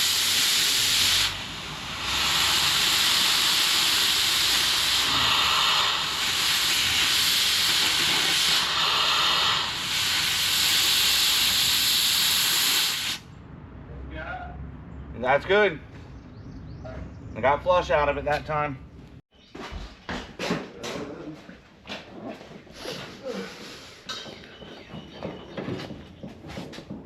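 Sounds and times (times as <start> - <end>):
gas hissing from a pipe: 0.0 - 13.3.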